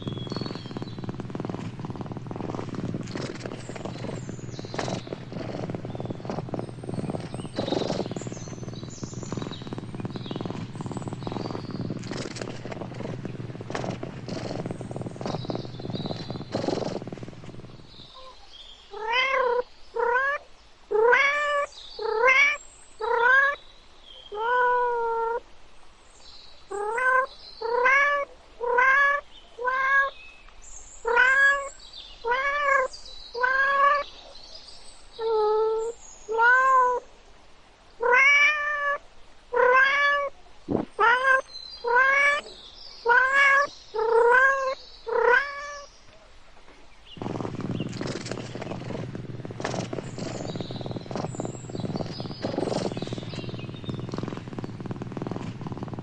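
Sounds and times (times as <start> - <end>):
low rumbling noise: 0.0 - 18.1, 47.2 - 56.0
cat meowing: 18.9 - 23.6, 24.4 - 25.4, 26.7 - 30.1, 31.1 - 31.7, 32.3 - 34.0, 35.2 - 37.0, 38.0 - 39.0, 39.6 - 40.3, 41.0 - 42.5, 43.1 - 45.8.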